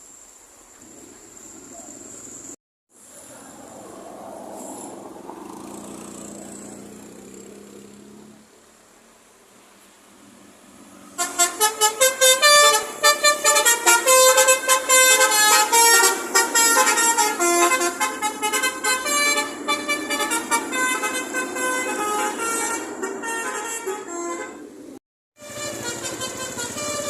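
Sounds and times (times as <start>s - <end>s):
multi-tone musical bus horn: 11.2s - 24.8s, 25.4s - 27.0s.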